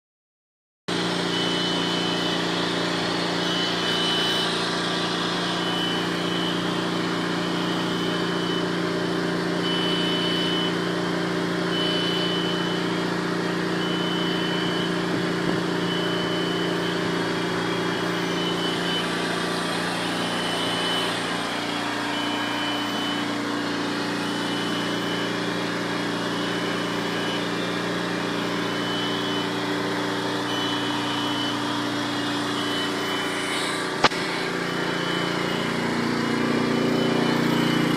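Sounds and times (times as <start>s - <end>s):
ice cream machine humming: 0.9s - 37.9s
short high tone: 13.8s - 25.5s.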